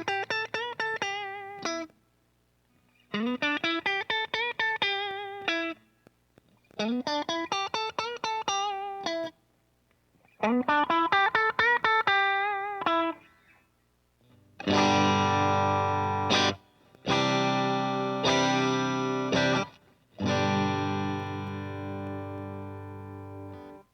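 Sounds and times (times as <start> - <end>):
electric guitar single notes: 14.6 - 23.9
electric guitar strummed chords: 14.6 - 23.9.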